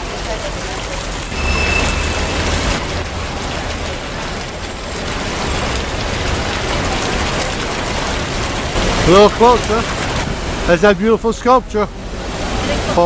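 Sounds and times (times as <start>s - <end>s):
rain hissing: 0.0s - 11.0s
thin high tone: 1.3s - 5.9s
low rumble: 1.3s - 8.8s.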